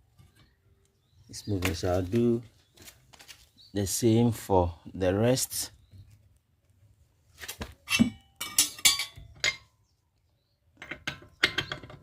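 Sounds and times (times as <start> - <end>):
metal tools clinking: 7.9 - 9.7.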